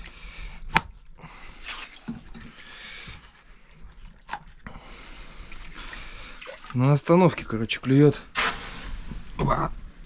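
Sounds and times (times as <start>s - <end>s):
water dripping and splashing: 1.6s - 4.7s, 5.4s - 7.6s.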